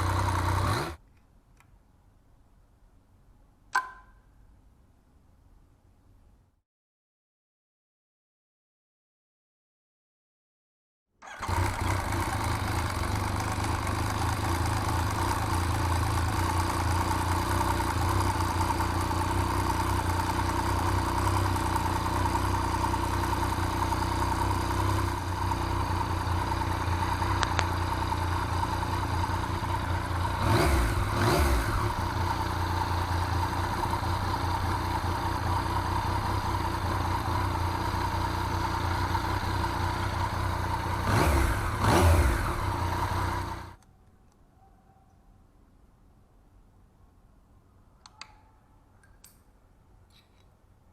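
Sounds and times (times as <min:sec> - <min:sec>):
motorcycle engine idling: 0:00.0 - 0:01.0, 0:11.2 - 0:43.8.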